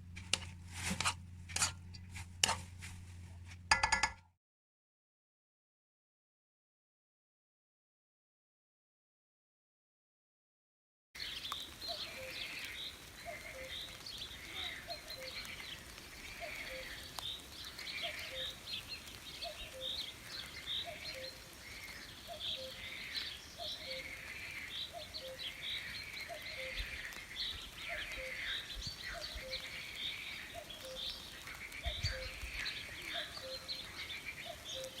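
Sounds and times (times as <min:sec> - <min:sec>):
birds chirping: 0:11.2 - 0:35.0.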